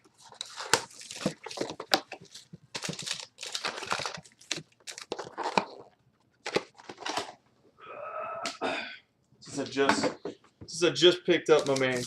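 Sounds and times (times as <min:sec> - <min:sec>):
card packs rustling and crinkling: 0:00.0 - 0:07.4, 0:11.5 - 0:12.0.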